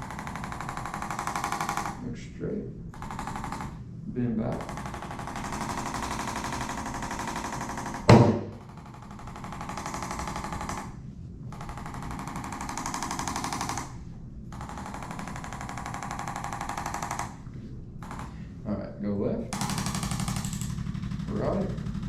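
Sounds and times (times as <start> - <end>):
loud knock: 8.1 - 8.6.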